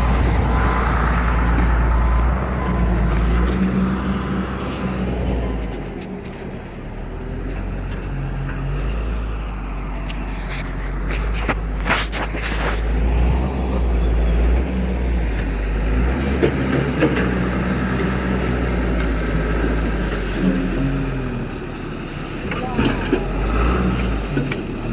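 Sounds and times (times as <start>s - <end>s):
engine running: 0.0s - 24.9s
sharp scrapes or knocks: 10.1s - 13.4s.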